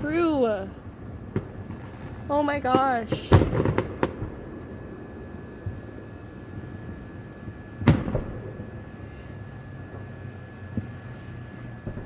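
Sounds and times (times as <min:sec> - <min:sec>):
thin high tone: 0:00.0 - 0:00.8
low background hum: 0:00.0 - 0:12.0.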